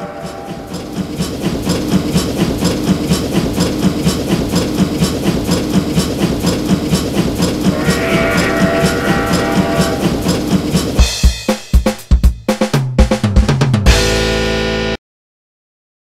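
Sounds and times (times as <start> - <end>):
train wheels clickety-clack: 0.0 - 12.2
steady tone: 7.6 - 11.2.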